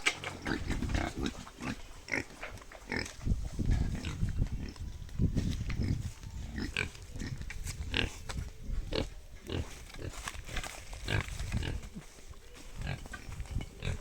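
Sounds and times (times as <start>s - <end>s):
pigs grunting and squealing: 0.0s - 3.2s.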